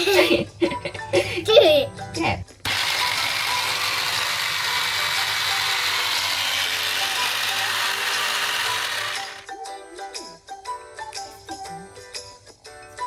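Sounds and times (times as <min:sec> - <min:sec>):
electric food chopper running: 0:02.6 - 0:09.5.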